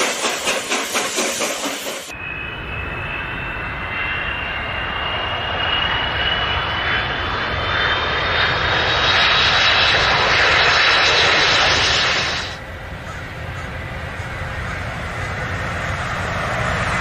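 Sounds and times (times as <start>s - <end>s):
airplane engines with high whine: 0.0s - 17.0s.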